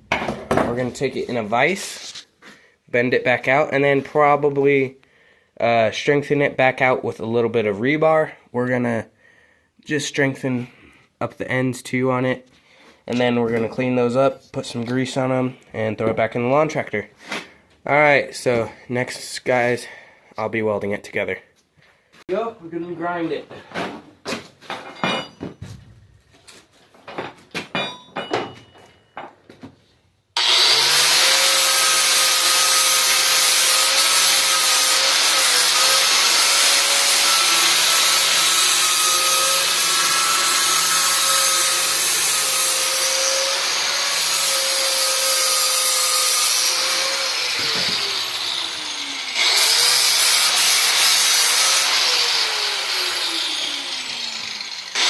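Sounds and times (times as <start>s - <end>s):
electric grinder grinding steel: 30.4s - 55.0s.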